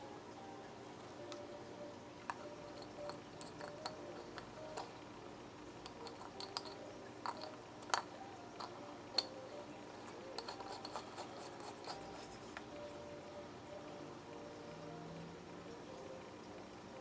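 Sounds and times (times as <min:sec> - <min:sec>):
small metal parts clicking: 0:02.3 - 0:05.0, 0:05.8 - 0:12.1.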